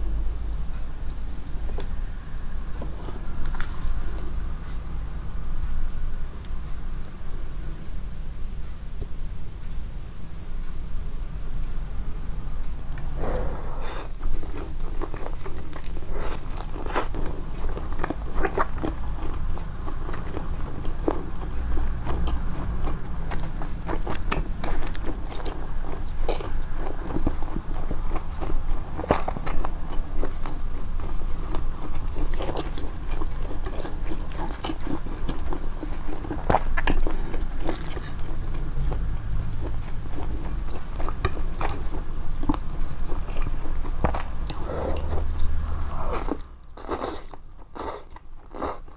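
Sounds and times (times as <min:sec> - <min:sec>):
low background rumble: 0:00.0 - 0:47.8
wet mouth chewing noodles: 0:12.9 - 0:48.9.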